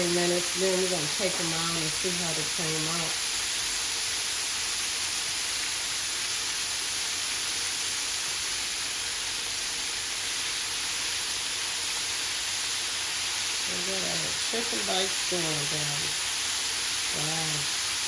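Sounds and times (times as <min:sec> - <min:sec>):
chicken deep-frying in oil: 0:00.0 - 0:18.0.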